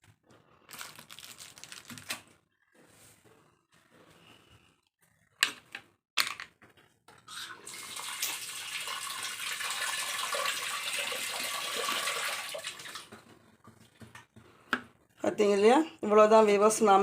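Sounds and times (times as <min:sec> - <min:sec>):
tap water running into sink: 0:07.6 - 0:13.2.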